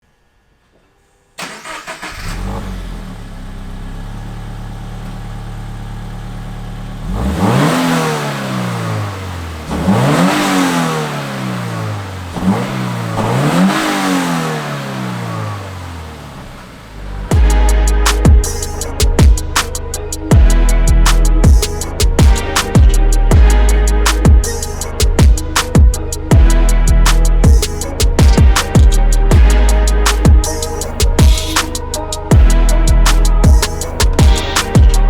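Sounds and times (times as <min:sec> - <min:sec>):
car engine idling: 0:01.4 - 0:35.0
car engine revving: 0:01.4 - 0:35.0
car engine starting: 0:01.4 - 0:35.0.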